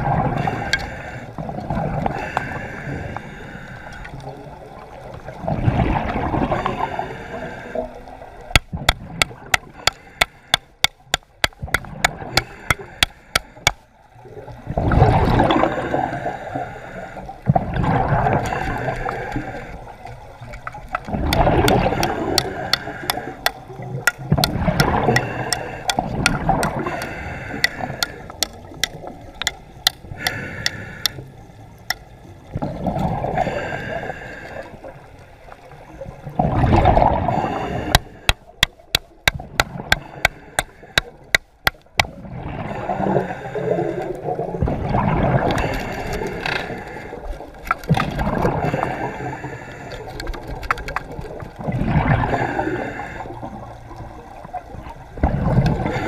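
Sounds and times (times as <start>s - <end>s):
water sloshing and gurgling: 0.0s - 56.0s
sharp clicks: 20.5s - 31.2s.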